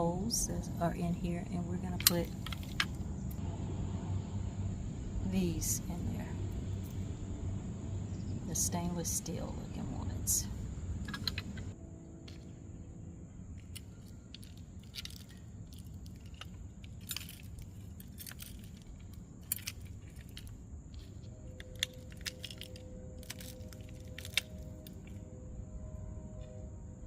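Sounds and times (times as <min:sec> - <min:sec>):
small metal parts clinking: 0:01.9 - 0:03.4, 0:10.3 - 0:11.8, 0:13.6 - 0:25.2.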